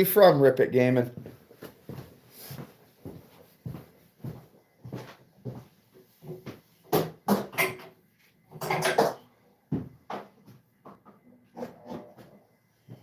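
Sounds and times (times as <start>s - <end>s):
objects knocking and clunking: 6.2s - 12.4s.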